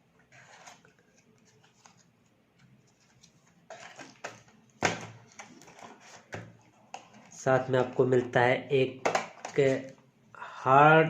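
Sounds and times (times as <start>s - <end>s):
plastic and cardboard rustling: 0.3s - 8.2s.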